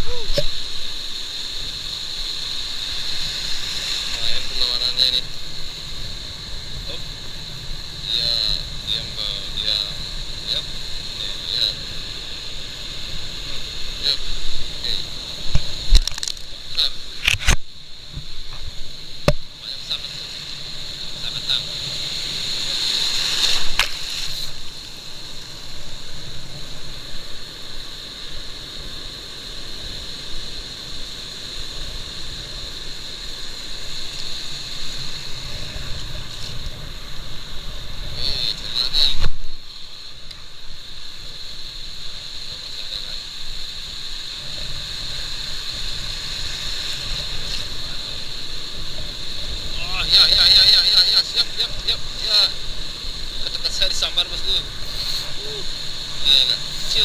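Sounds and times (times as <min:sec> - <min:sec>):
steady high hiss: 0:00.0 - 0:57.0.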